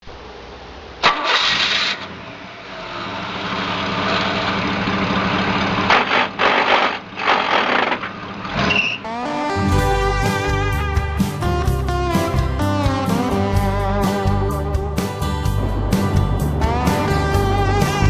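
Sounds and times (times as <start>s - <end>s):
engine running: 0.0s - 18.0s
engine cranking: 1.0s - 9.1s.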